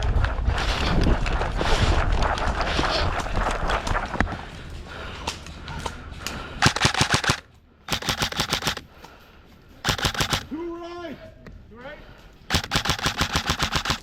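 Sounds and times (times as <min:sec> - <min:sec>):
airsoft rifle bursts: 0:06.6 - 0:08.9, 0:09.8 - 0:10.6, 0:12.5 - 0:14.0.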